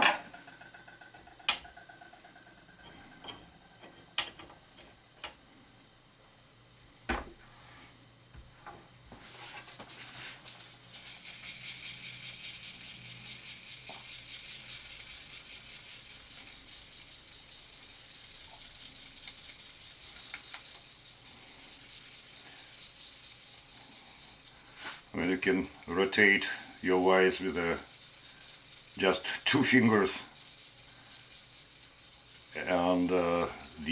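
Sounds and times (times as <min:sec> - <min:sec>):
knife being hand-sanded: 0:09.6 - 0:33.9.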